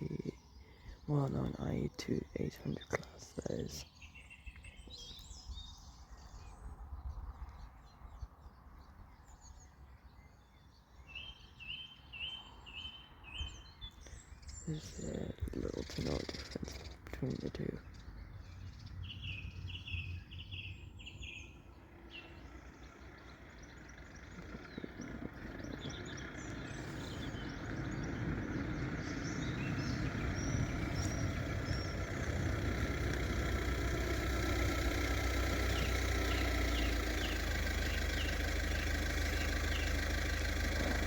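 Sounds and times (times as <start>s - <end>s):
small birds chirping: 0.0s - 41.0s
diesel railcar engine and wheel rumble: 12.2s - 41.0s.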